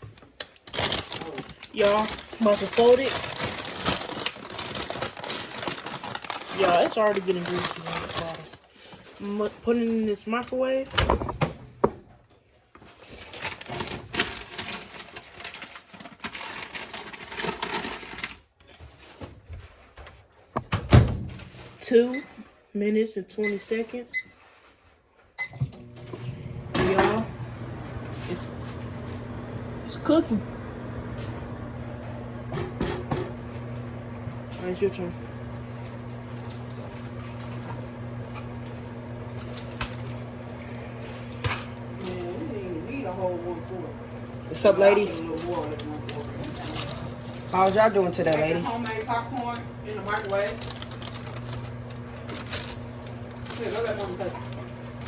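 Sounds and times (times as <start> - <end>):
paper bag crinkling and rustling: 0.0 - 10.8, 12.8 - 19.8, 34.7 - 55.0
microwave oven humming: 0.7 - 8.4, 25.4 - 55.0.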